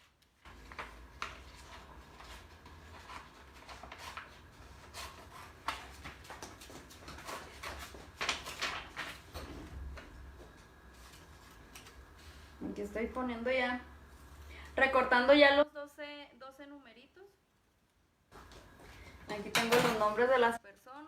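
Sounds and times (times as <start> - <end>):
paper rustling: 0.0 - 12.4
low steady hum: 0.2 - 21.0.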